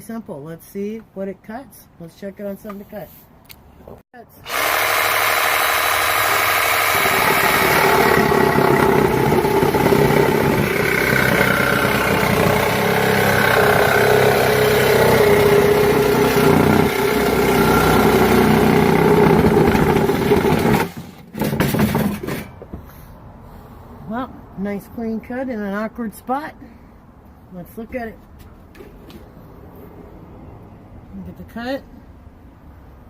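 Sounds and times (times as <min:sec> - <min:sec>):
reciprocating saw cutting: 0:04.4 - 0:21.3.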